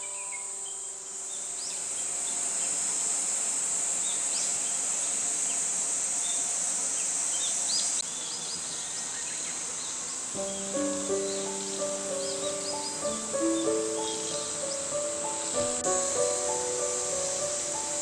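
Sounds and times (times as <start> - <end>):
bird chirps: 0.0 - 2.7, 7.3 - 18.0
insects shrilling: 0.0 - 18.0.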